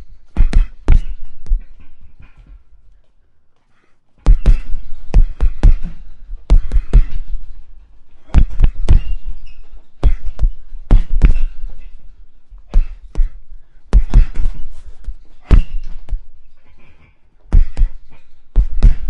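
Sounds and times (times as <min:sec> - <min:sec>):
punches thudding on heavy bag: 0:00.2 - 0:01.8, 0:04.2 - 0:07.6, 0:08.2 - 0:16.3, 0:17.5 - 0:19.0.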